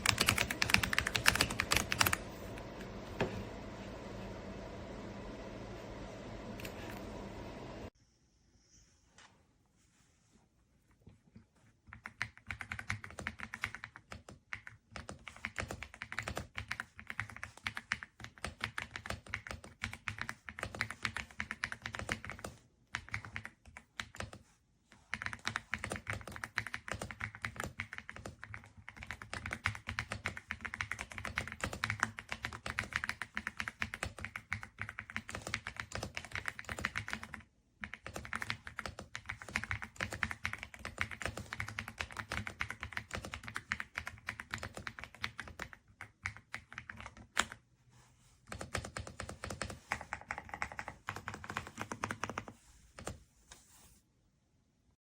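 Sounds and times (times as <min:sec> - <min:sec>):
typing on mechanical keyboard: 0:00.0 - 0:02.3, 0:11.9 - 0:24.4, 0:25.1 - 0:47.6, 0:48.5 - 0:53.2.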